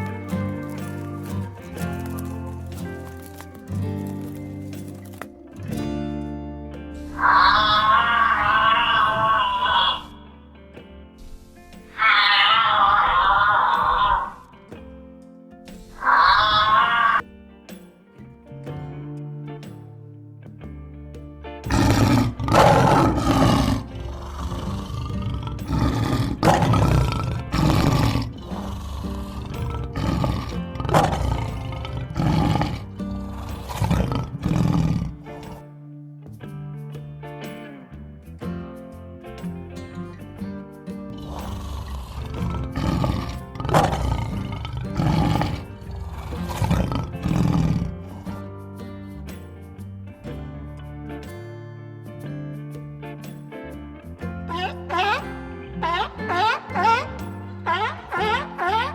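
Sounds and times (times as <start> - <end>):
background music: 0.0 - 58.9
big cat roaring: 7.0 - 10.2, 12.0 - 14.4, 21.6 - 35.6, 41.1 - 48.5, 54.5 - 58.9
large animal calling roughly: 7.0 - 10.3, 21.7 - 35.6, 41.1 - 48.2, 54.5 - 58.9.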